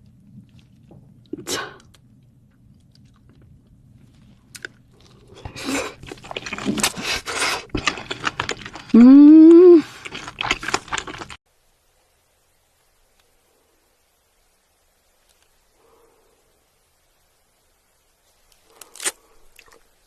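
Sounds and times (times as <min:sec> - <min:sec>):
crunching and chewing food: 0:00.0 - 0:09.2, 0:09.8 - 0:11.4, 0:18.5 - 0:19.9
person humming mmm: 0:08.9 - 0:09.9.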